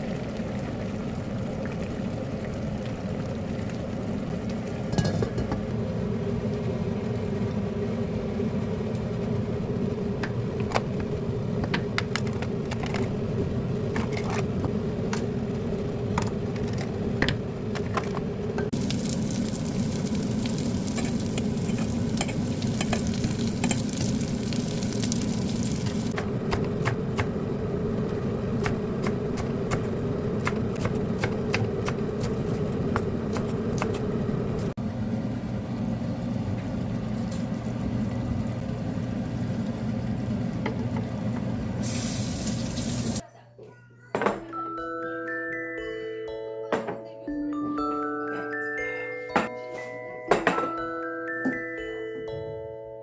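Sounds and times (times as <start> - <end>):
food sizzling in a pan: 18.7 - 26.2, 41.8 - 43.2.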